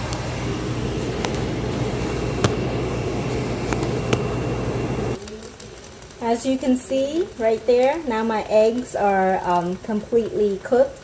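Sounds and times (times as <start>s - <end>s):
steady machine hum: 0.0s - 5.2s
food frying in a pan: 5.1s - 11.0s.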